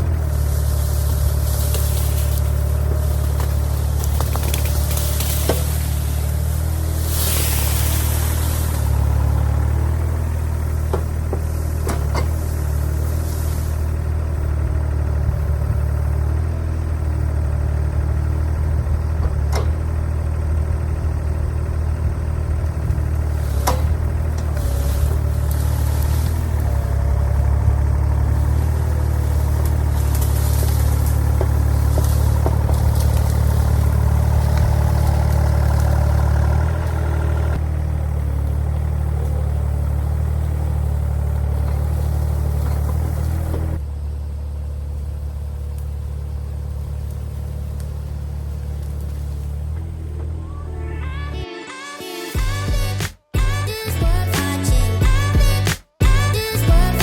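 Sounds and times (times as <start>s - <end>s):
tractor engine running: 0.0s - 51.6s, 52.2s - 57.0s
sharp knocks and clanks: 10.8s - 12.6s.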